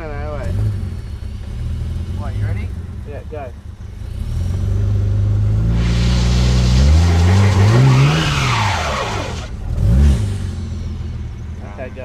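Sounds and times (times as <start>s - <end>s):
car engine revving: 0.0s - 11.6s
tyres spinning on loose ground: 5.8s - 9.5s.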